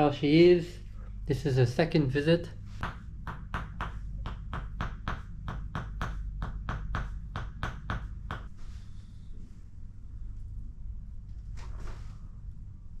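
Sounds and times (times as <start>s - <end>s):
wooden mallet tapping a peg: 2.8s - 8.5s.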